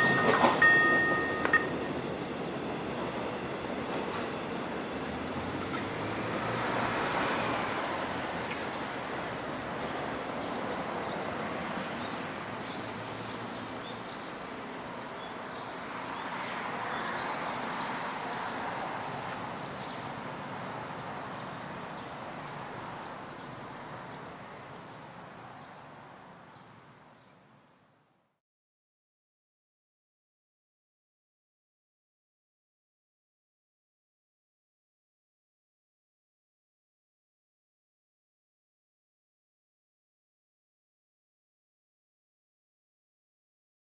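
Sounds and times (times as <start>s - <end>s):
road vehicles passing: 0.0s - 28.1s
small birds chirping: 9.3s - 25.8s.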